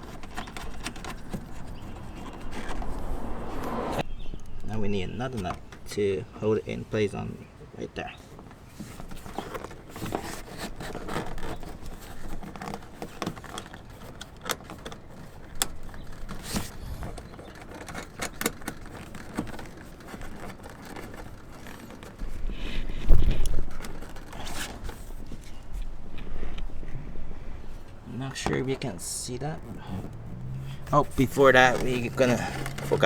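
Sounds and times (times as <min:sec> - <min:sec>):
metal hardware clicking and scraping: 0:00.0 - 0:03.2
low rumble: 0:02.4 - 0:04.0.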